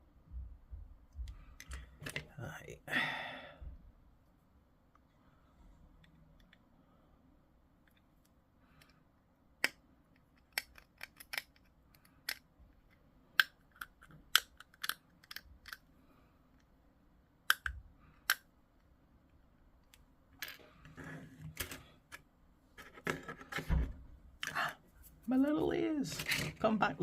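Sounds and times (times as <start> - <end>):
rustling and scraping of parts: 20.4 - 26.7.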